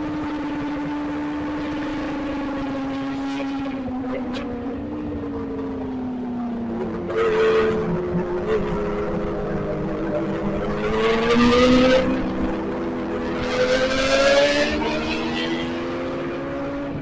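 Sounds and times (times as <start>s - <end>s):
motorcycle engine at high revs: 0.0s - 5.8s, 6.6s - 17.0s.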